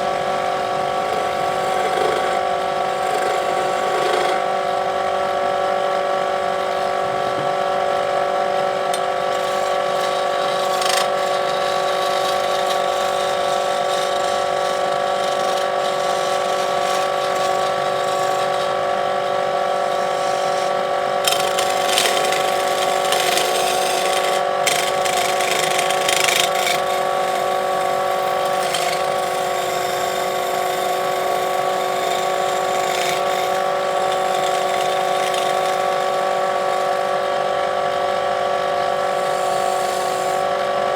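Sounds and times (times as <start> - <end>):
turning tool scraping spinning wood: 0.0 - 4.6, 8.6 - 40.9
wood lathe motor whine: 0.0 - 40.9.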